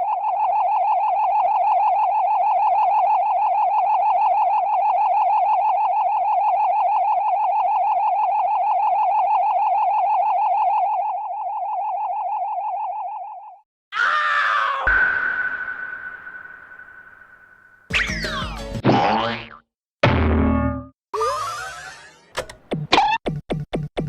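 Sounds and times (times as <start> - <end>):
warbling electronic tone: 14.9 - 18.6.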